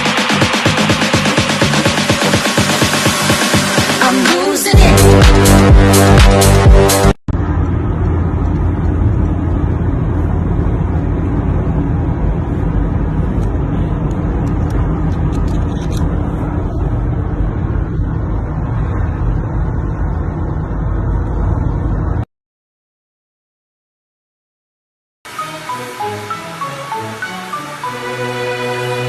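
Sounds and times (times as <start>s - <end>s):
low rumbling noise: 0.0s - 22.3s.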